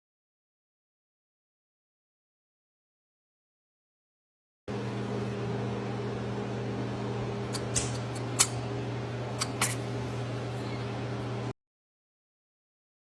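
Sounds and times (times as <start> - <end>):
steady low hum: 4.7 - 11.5.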